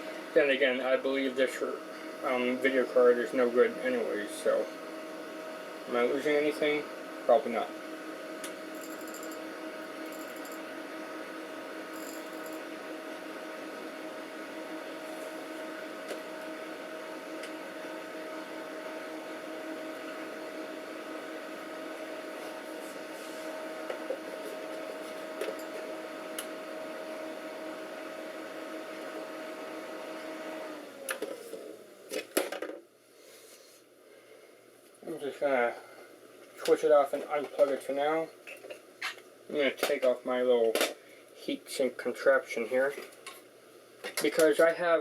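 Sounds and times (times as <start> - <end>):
computer cooling fans humming: 0.0 - 32.1.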